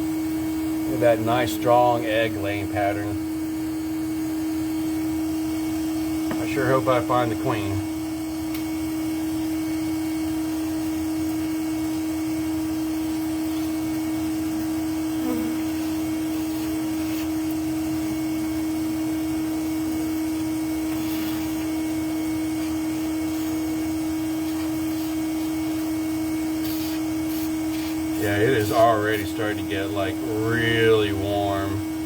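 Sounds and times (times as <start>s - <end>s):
steady machine hum: 0.0s - 32.0s.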